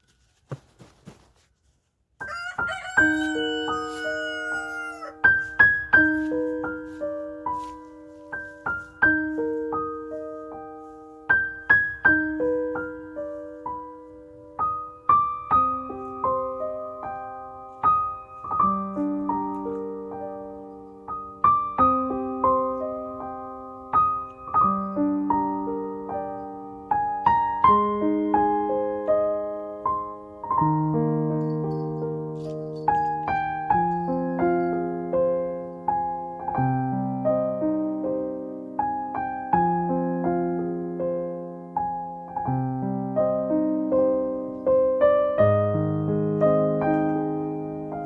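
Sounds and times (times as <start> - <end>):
gentle solo piano melody: 3.0 - 48.0.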